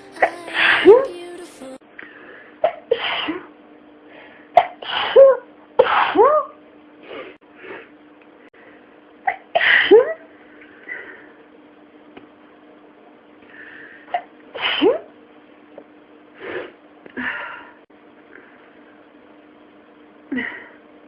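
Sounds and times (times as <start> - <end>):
person sneezing: 4.6 - 6.5, 14.2 - 15.1.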